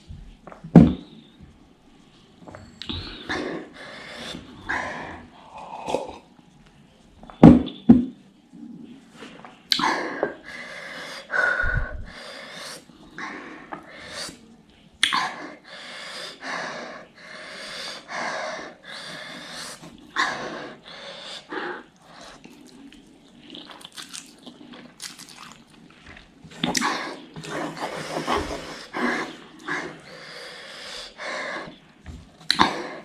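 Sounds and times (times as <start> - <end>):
person breathing hard and sniffing: 15.2 - 22.4, 26.8 - 31.8.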